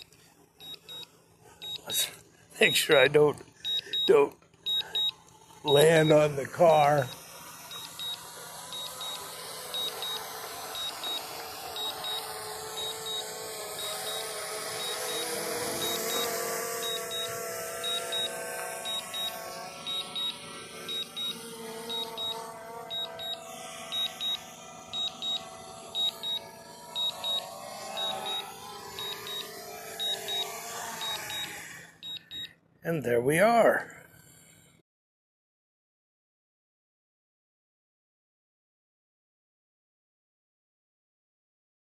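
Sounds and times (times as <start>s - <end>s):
drone propellers humming: 2.7s - 32.3s
short double beeps: 3.7s - 5.1s, 30.0s - 32.5s.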